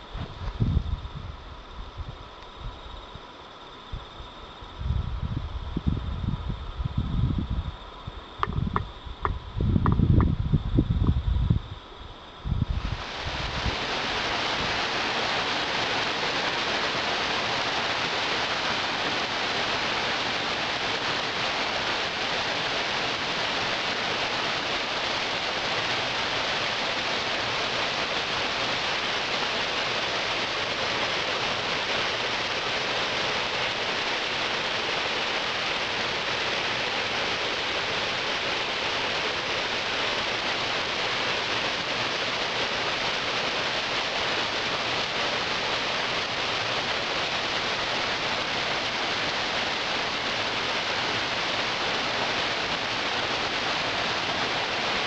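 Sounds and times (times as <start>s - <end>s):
rushing stream water: 12.7s - 55.0s.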